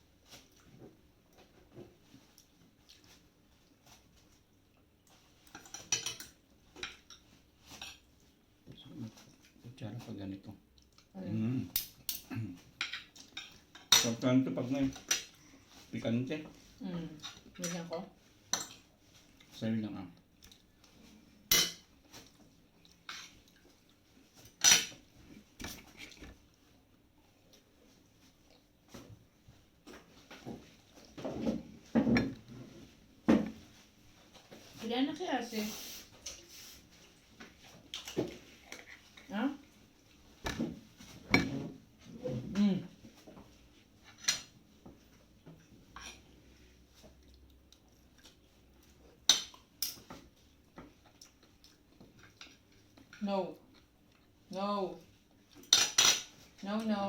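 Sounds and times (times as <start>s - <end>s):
light cutlery clatter: 5.4s - 8.1s, 11.7s - 14.2s, 18.5s - 18.9s, 21.5s - 22.3s, 24.6s - 25.0s, 44.0s - 44.5s, 45.9s - 46.2s, 55.6s - 56.4s.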